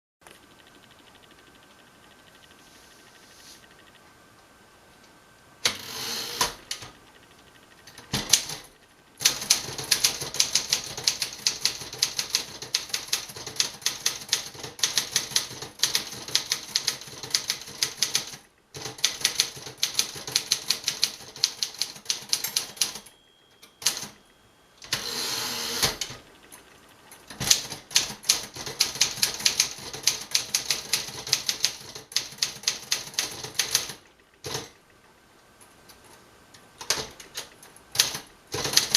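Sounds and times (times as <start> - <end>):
typewriter carriage return: 5.6 - 6.9, 7.9 - 24.2, 24.8 - 26.2, 27.3 - 34.8, 36.8 - 38.9
typewriter keystrikes: 7.9 - 23.1, 23.7 - 24.2, 27.3 - 34.8, 36.8 - 38.9
typewriter bell: 19.0 - 25.1.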